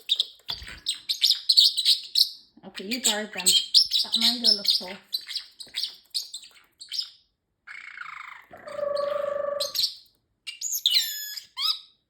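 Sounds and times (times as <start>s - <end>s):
parrot chirping: 0.0s - 12.0s
buzzy raspy bird call: 7.7s - 9.9s.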